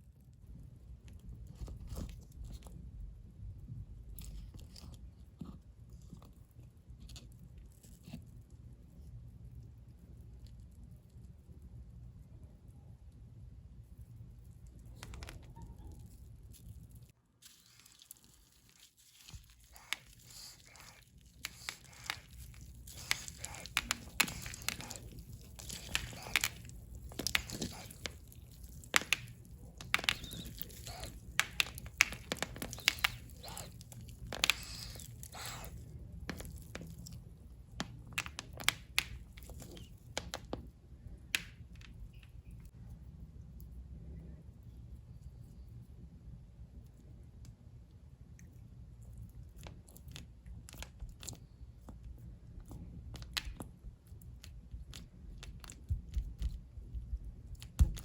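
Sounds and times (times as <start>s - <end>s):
slime squeezed popping: 18.8s - 40.5s.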